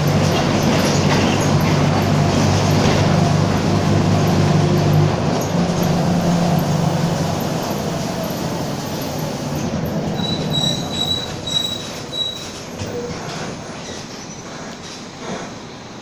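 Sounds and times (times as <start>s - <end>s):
bus engine slowing: 0.0s - 16.0s
high-pitched squeal: 5.8s - 12.6s.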